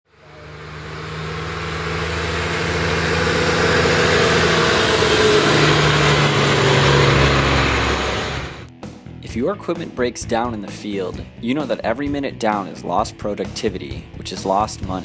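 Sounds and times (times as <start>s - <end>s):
vehicle engine running: 0.1s - 8.7s.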